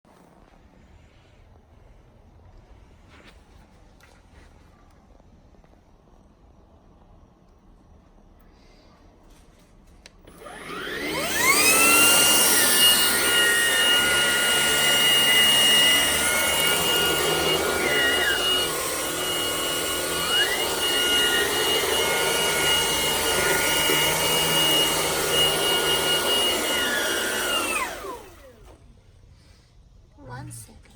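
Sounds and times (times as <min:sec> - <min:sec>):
vacuum cleaner motor whine: 0:10.0 - 0:29.0.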